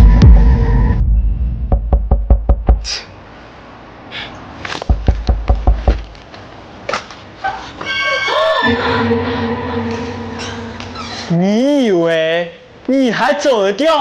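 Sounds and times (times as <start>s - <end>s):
hard knocks: 1.7s - 2.9s, 4.9s - 6.2s.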